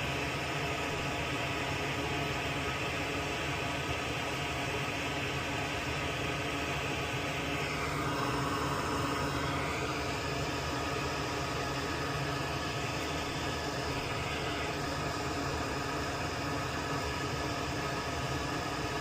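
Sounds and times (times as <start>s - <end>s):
fan humming and hissing: 0.0s - 19.0s.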